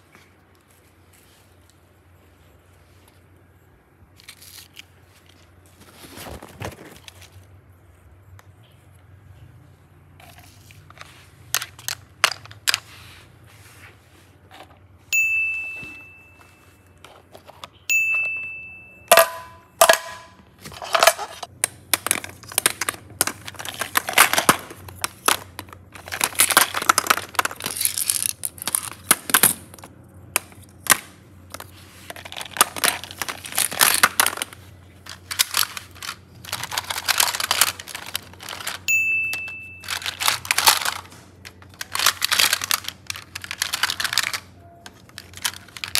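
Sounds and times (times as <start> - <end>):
short ringing dings: 15.1 - 17.0, 17.9 - 19.8, 38.9 - 39.9.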